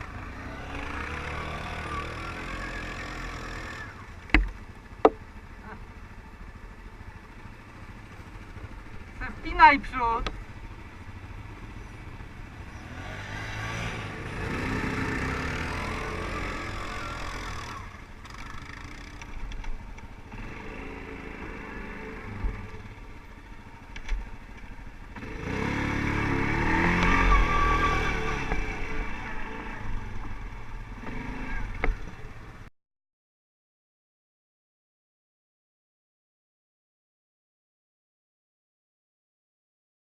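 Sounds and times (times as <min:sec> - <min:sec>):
atv engine revving: 0:00.0 - 0:32.7
sharp knocks: 0:04.3 - 0:05.2.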